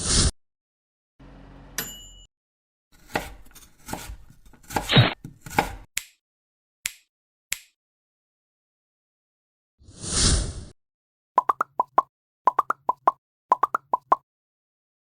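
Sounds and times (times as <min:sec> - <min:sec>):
knife chopping on cutting board: 0:03.0 - 0:06.1.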